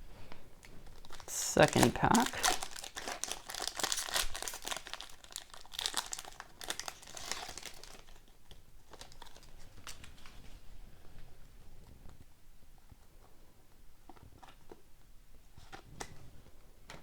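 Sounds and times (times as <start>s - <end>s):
wrapper tearing and crinkling: 0.8s - 10.3s.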